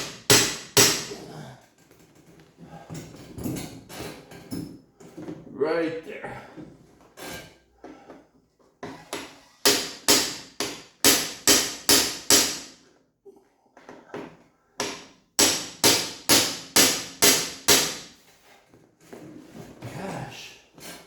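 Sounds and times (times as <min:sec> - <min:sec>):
hammer blows ringing: 0:00.0 - 0:01.2, 0:09.6 - 0:12.8, 0:14.8 - 0:18.1.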